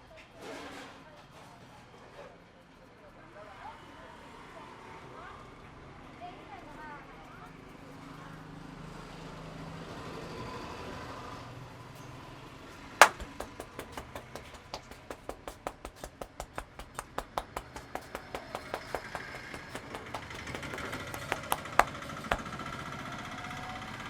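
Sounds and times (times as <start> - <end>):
hands slapping a head: 13.0 - 22.5.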